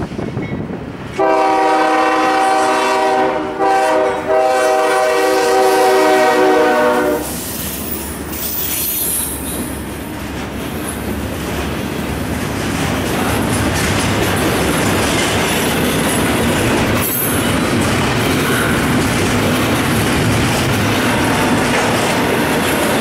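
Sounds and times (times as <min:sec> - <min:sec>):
train rumble and wheel noise: 0:00.0 - 0:23.0
locomotive air horn: 0:01.2 - 0:07.4.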